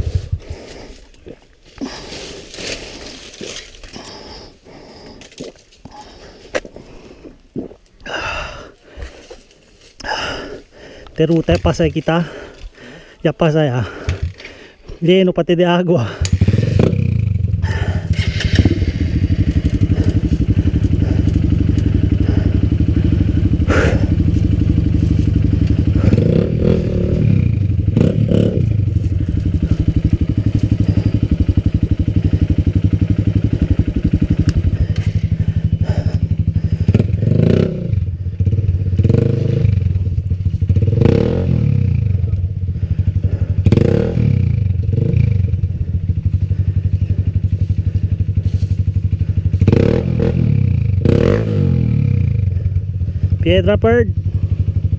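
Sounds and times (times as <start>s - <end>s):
dirt bike engine revving: 16.0s - 54.9s.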